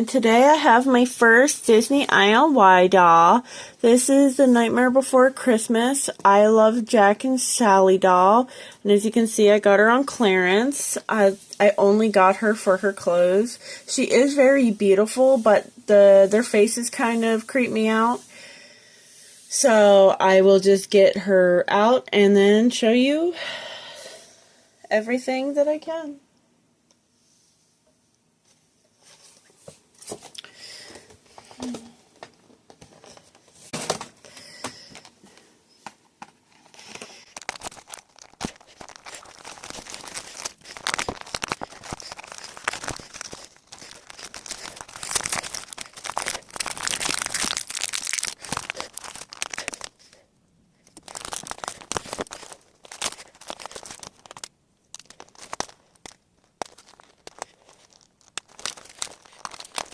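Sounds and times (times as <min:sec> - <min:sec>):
plastic and cardboard tearing: 0:36.6 - 0:50.2, 0:50.9 - 0:59.9.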